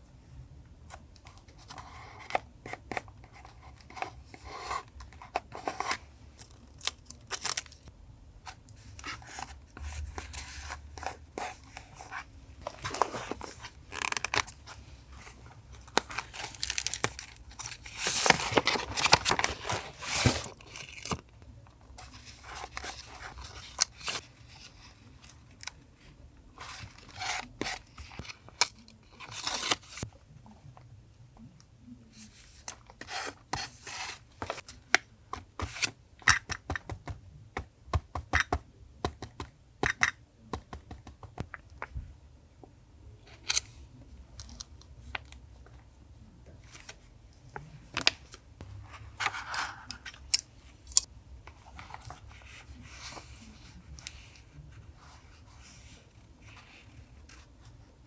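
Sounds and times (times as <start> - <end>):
paper tearing and rustling: 15.9 - 21.2.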